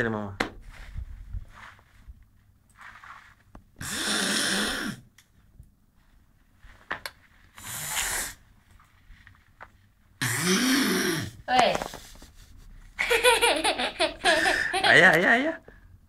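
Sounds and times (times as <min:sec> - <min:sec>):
boy imitating snoring: 0:03.8 - 0:05.1, 0:10.2 - 0:11.4.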